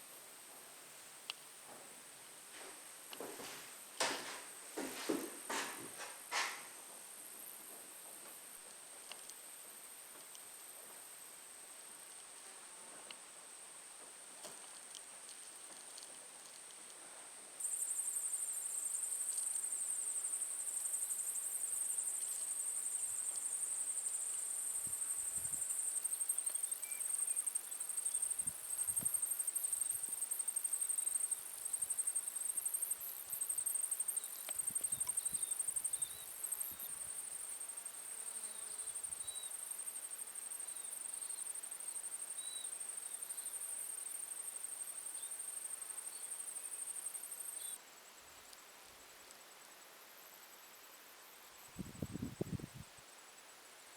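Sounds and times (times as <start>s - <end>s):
insects chirring: 17.6s - 53.3s.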